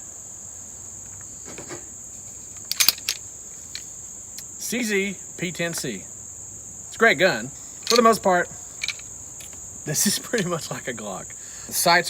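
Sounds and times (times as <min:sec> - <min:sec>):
crickets chirring: 0:00.0 - 0:12.0
man speaking: 0:09.9 - 0:12.0.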